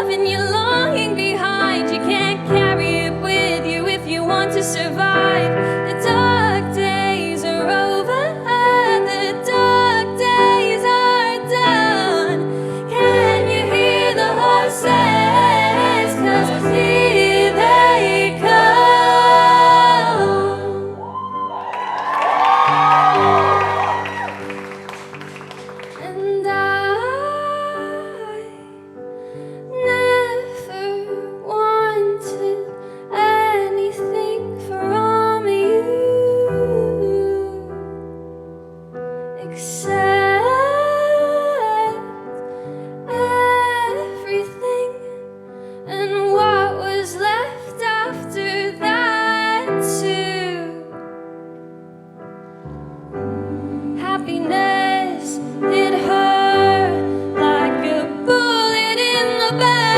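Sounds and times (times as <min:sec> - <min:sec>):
woman singing a pop song: 0:00.0 - 0:21.0, 0:26.0 - 0:28.8, 0:29.7 - 0:37.7, 0:39.4 - 0:42.3, 0:43.1 - 0:45.3, 0:45.9 - 0:51.0, 0:53.5 - 0:59.9
piano accompaniment: 0:00.0 - 0:59.9.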